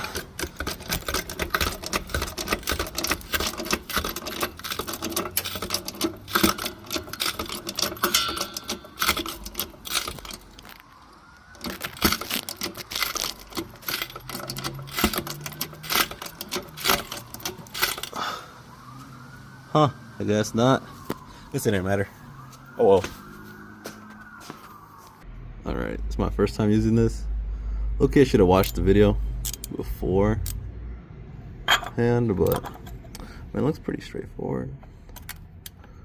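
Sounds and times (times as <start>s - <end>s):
car jack clicking and rattling: 0.0s - 18.2s, 31.7s - 33.2s
distant siren wailing: 0.0s - 34.8s.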